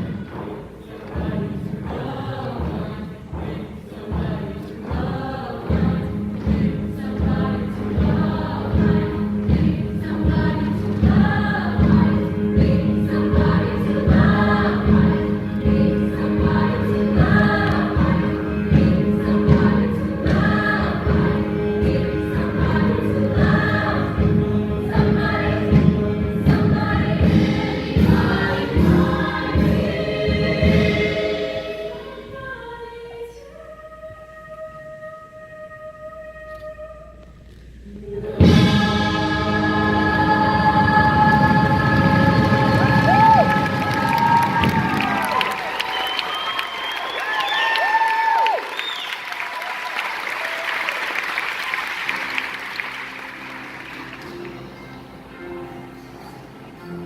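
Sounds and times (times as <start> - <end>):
loud accompaniment with steady beat: 0.0 - 31.8
choir singing: 0.0 - 37.2, 37.9 - 47.8.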